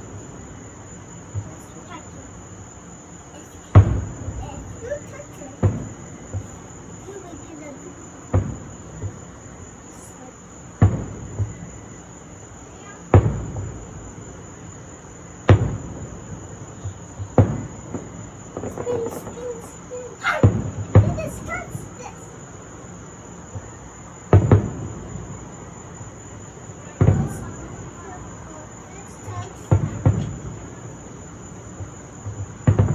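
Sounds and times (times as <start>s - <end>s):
crickets chirping: 0.0s - 32.9s
fireworks booming: 0.0s - 32.9s
small firework pops: 3.6s - 7.7s, 8.3s - 9.3s, 10.8s - 11.9s, 12.9s - 14.4s, 15.4s - 22.4s, 23.5s - 25.6s, 26.2s - 32.9s.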